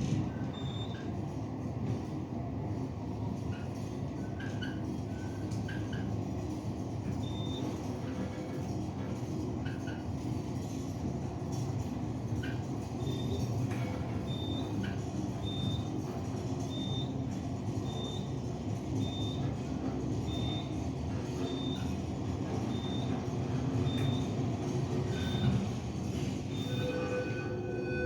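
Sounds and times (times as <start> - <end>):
fire alarm beeping: 0.5 - 1.1, 22.6 - 23.2, 23.9 - 24.4, 26.5 - 28.0.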